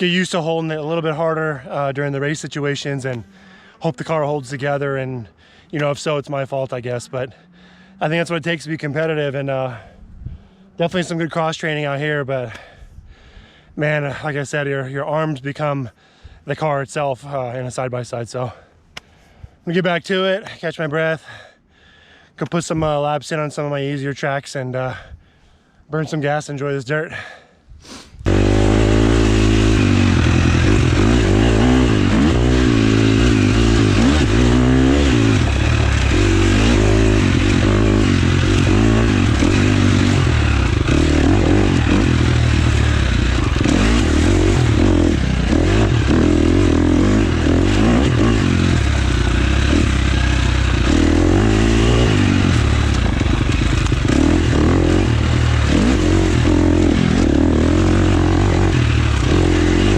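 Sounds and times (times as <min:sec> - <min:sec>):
dirt bike engine revving: 0:28.2 - 0:59.9.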